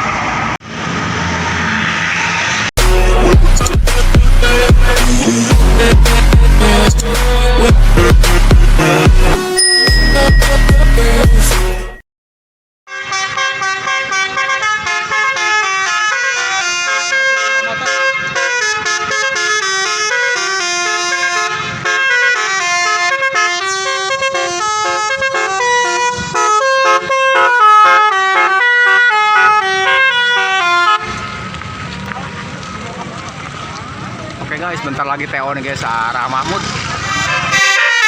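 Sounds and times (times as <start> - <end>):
bus multi-tone horn melody: 12.9 - 31.4, 36.6 - 38.0.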